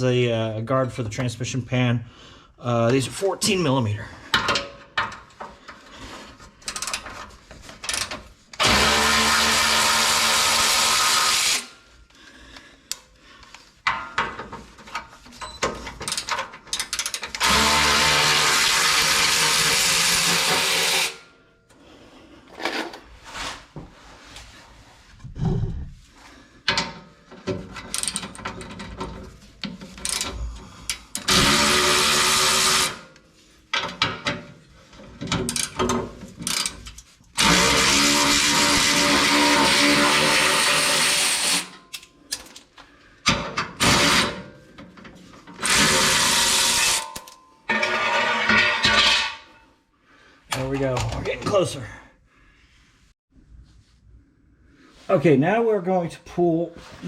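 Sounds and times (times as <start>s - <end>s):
tool handling clicks and clatter: 4.3s - 8.6s, 12.9s - 17.4s, 22.5s - 23.1s, 26.6s - 31.3s, 33.7s - 37.5s, 41.7s - 43.8s
electric ratchet spinning: 7.9s - 11.7s, 16.9s - 21.2s, 31.2s - 33.1s, 37.4s - 41.8s, 45.6s - 47.2s.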